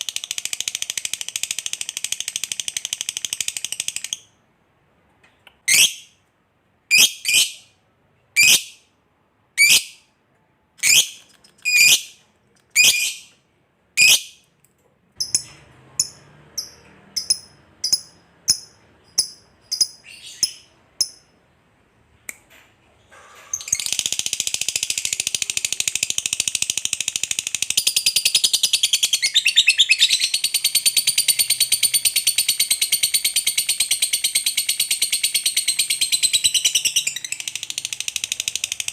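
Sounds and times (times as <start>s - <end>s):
lovebird calling and chattering: 10.8s - 13.3s, 14.0s - 14.4s, 15.2s - 21.2s, 23.7s - 38.8s.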